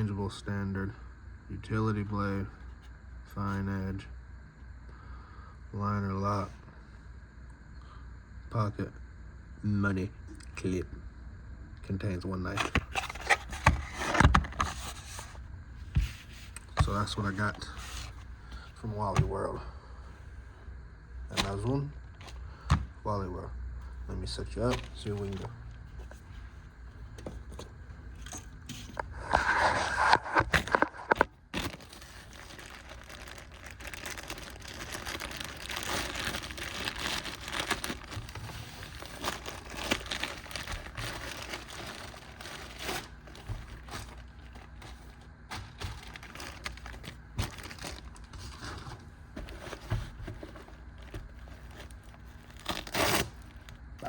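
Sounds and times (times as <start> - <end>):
packaging crinkling and rustling: 12.5 - 19.5, 24.6 - 26.6, 28.2 - 54.0.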